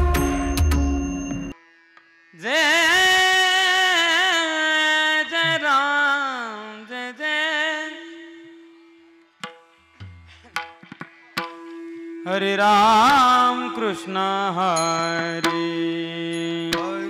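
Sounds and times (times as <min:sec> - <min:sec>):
held drone note: 0:00.0 - 0:01.6
intro music: 0:00.0 - 0:01.6
person singing devotional song: 0:02.4 - 0:08.7, 0:12.2 - 0:17.0.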